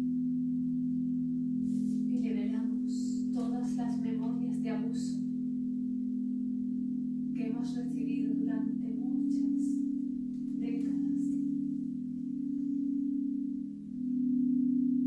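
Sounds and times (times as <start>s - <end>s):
singing bowls ringing: 0.0s - 15.0s
person's voice: 2.1s - 5.2s, 7.4s - 9.8s, 10.5s - 11.5s.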